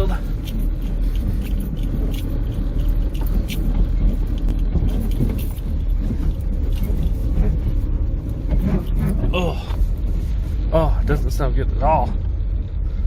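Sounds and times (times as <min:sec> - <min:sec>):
car engine running low speed: 0:00.0 - 0:13.0
car body knocks and creaks: 0:00.6 - 0:10.0.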